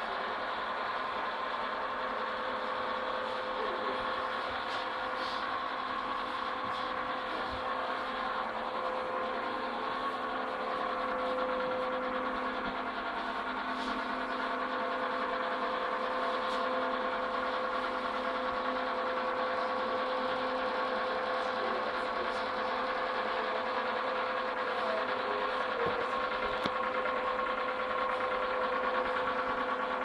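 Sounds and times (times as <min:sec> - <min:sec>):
small motor running: 0:00.0 - 0:30.0.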